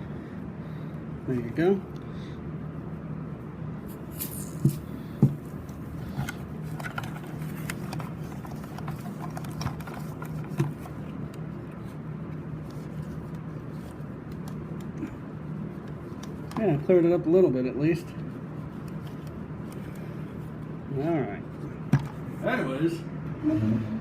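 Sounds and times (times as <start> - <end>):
steady low hum: 0.0 - 24.0
plastic alarm unit being handled: 6.2 - 11.0.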